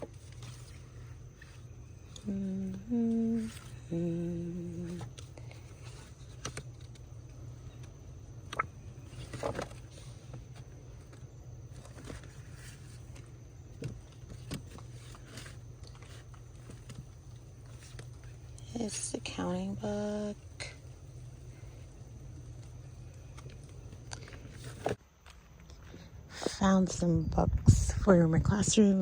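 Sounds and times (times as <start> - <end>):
steady low hum: 0.0 - 29.0
woman humming: 2.1 - 5.4.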